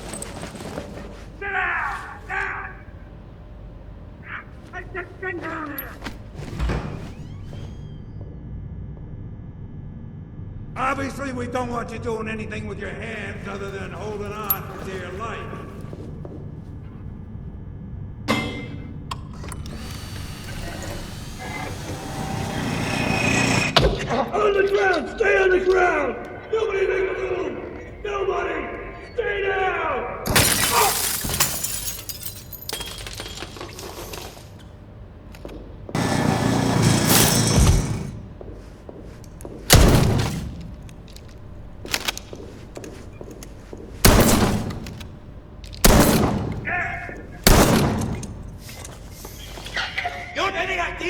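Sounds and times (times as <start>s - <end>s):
mechanical clicking and rattling: 39.2s - 49.8s
shotgun blasts echoing: 44.0s - 45.2s, 45.8s - 48.8s.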